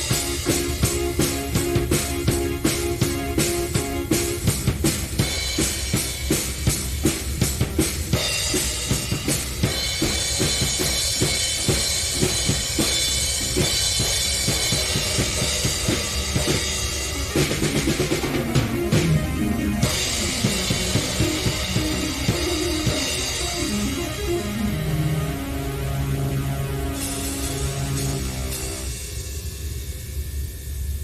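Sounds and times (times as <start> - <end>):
keyboard tones: 17.1 - 28.8.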